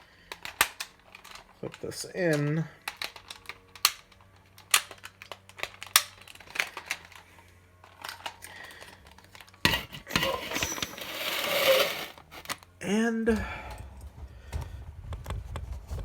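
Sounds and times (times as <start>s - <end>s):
plastic toy belt clicking: 0.0s - 12.7s
plastic handling and scraping: 0.3s - 12.7s.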